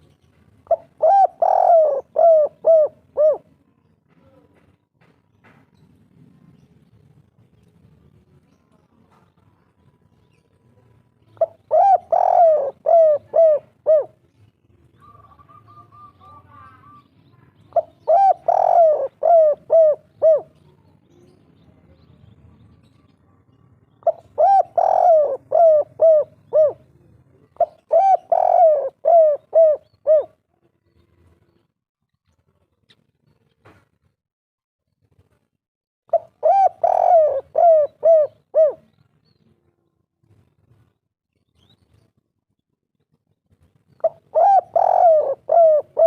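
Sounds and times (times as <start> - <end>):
dove cooing: 0.6 - 3.6, 11.4 - 14.2, 15.0 - 17.0, 17.7 - 20.8, 24.0 - 30.4, 36.1 - 39.0, 44.0 - 46.0.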